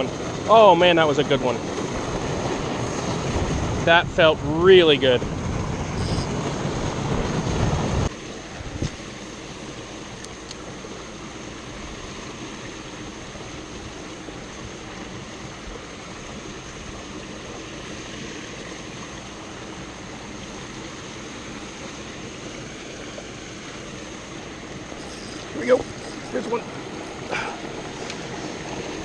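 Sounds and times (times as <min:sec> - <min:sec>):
rushing outdoor background noise: 0:00.0 - 0:29.0
high-pitched drone: 0:05.9 - 0:06.4.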